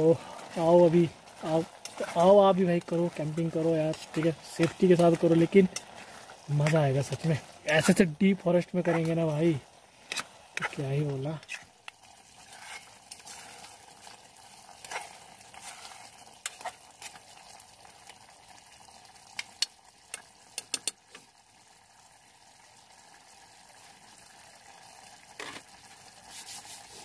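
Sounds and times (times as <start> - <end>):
food sizzling in a pan: 0.0 - 27.0
spoon clicking against pan: 19.4 - 21.0.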